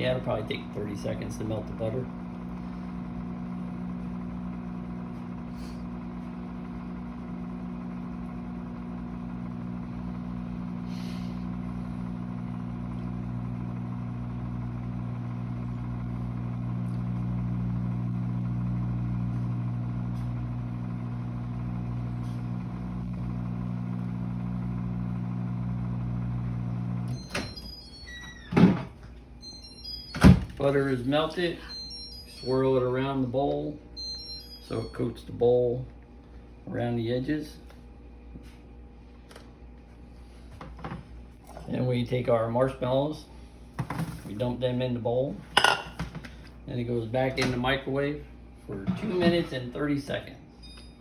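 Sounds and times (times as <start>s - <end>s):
microwave short tone: 0.0s - 35.4s, 50.5s - 51.0s
microwave oven humming: 0.0s - 51.0s.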